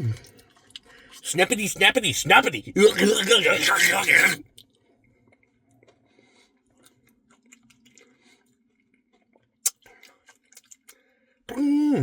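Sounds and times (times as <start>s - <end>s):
close chewing mouth sounds: 0.0s - 1.3s, 2.8s - 11.0s.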